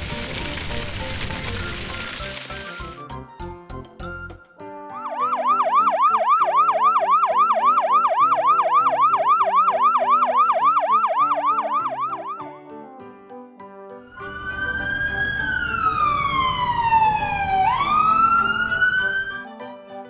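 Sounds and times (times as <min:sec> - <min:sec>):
background music: 0:00.0 - 0:20.0
yelp siren: 0:04.9 - 0:12.6, 0:14.0 - 0:19.6.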